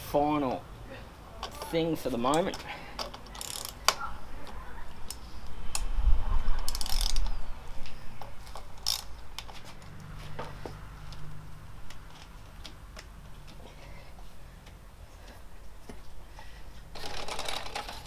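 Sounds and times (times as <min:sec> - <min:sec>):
tools and metal parts clicking: 0:01.4 - 0:04.0, 0:06.7 - 0:07.4, 0:08.4 - 0:09.5, 0:16.9 - 0:18.0.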